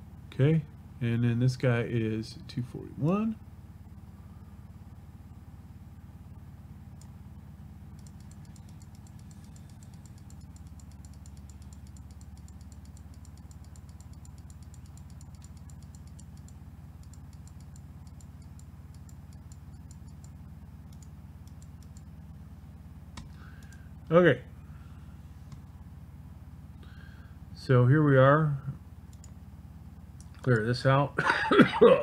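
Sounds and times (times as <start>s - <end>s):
steady low hum: 0.0s - 32.0s
keyboard clicking: 8.0s - 20.3s.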